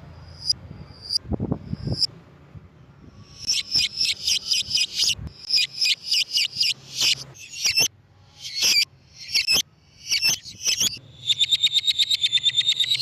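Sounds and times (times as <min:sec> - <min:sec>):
lovebird chattering shrill chirps: 0:03.2 - 0:13.0.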